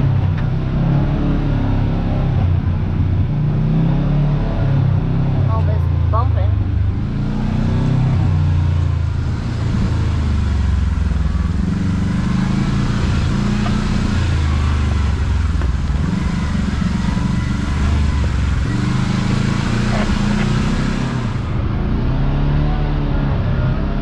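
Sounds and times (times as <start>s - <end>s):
off-road vehicle engine running: 0.0s - 24.0s.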